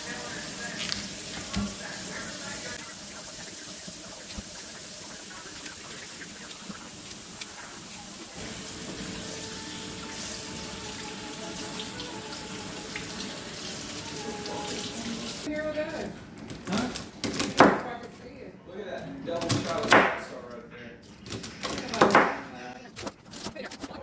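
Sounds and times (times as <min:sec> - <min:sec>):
water rushing: 0:00.0 - 0:15.5.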